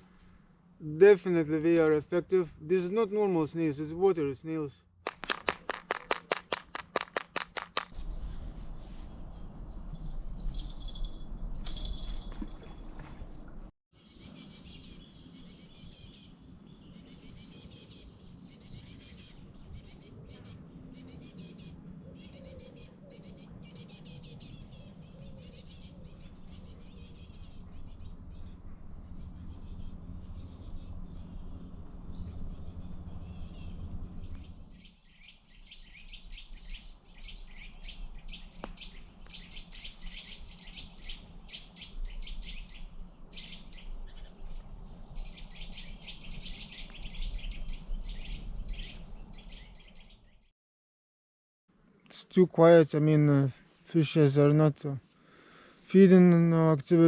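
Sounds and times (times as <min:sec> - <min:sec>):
rapid clicks: 0:05.1 - 0:08.0
songbirds chirping and singing: 0:14.0 - 0:50.5.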